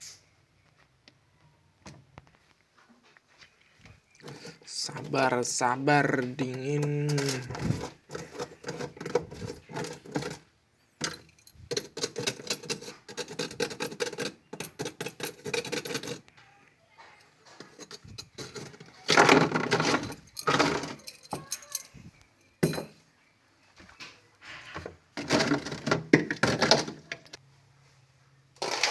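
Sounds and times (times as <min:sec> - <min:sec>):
hard objects clattering: 0:04.1 - 0:16.3, 0:17.0 - 0:23.1, 0:23.9 - 0:27.4.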